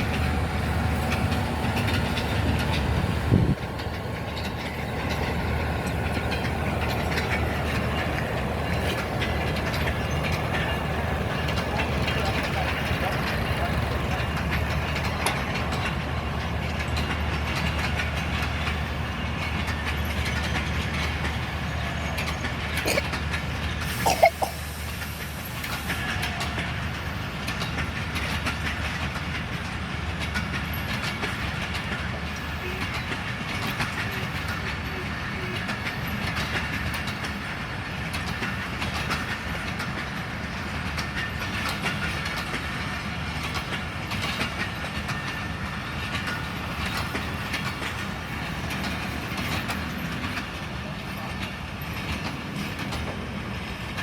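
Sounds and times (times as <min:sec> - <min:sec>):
train wheels clacking over rail joints: 0:00.0 - 0:54.0.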